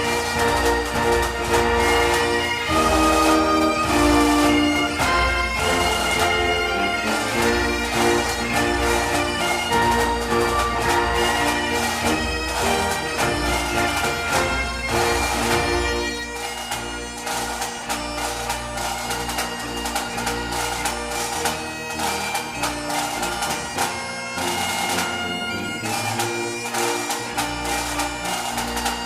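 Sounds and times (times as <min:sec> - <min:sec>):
low musical accompaniment: 0:00.0 - 0:16.0
bagpipes playing over drones: 0:00.0 - 0:29.0.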